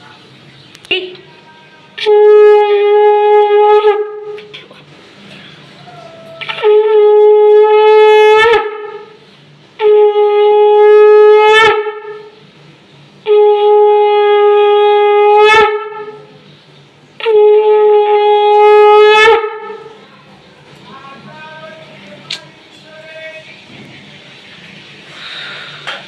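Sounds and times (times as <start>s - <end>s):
conch shell blasts: 2.0s - 4.4s, 5.9s - 9.2s, 9.8s - 12.3s, 13.3s - 16.3s, 17.2s - 19.9s.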